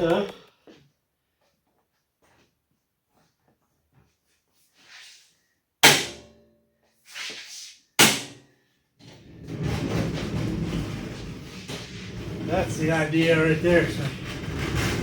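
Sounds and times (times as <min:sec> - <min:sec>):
metal drawer sliding: 0:09.0 - 0:15.0.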